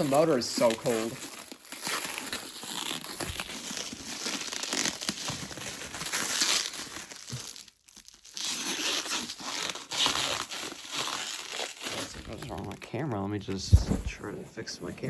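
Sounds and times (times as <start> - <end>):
packing material crinkling: 0.0 - 15.0.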